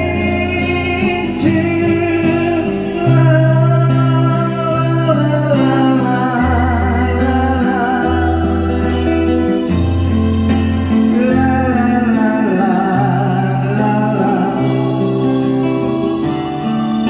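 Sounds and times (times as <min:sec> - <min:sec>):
bass line: 0:00.0 - 0:17.0
guitar: 0:00.0 - 0:17.0
person singing a long note: 0:00.0 - 0:17.0.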